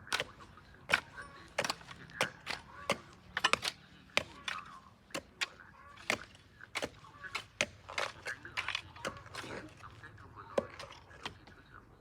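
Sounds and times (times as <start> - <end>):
sharp knocks on a fence: 0.0 - 9.3.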